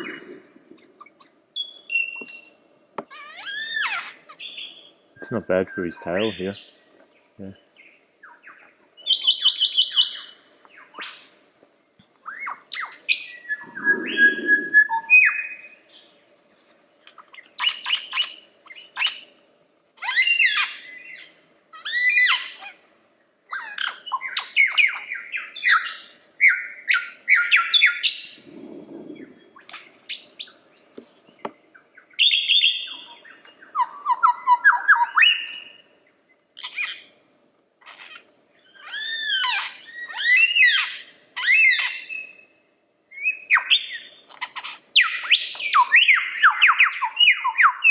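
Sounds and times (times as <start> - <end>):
low muffled sounds: 0.0 - 1.1, 13.5 - 15.2, 28.4 - 30.1
lyrebird singing: 0.0 - 11.3, 12.1 - 16.2, 20.0 - 22.8, 23.5 - 37.2, 37.8 - 42.5, 43.1 - 47.9.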